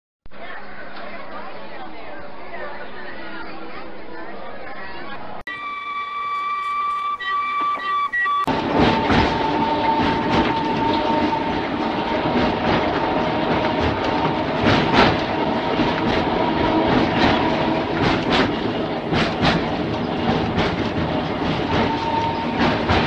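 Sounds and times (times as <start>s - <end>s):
high steady tone: 5.5s - 9.2s
electric tram rumble and whine: 5.5s - 23.0s
wheels clicking over rail joints: 6.4s - 23.0s.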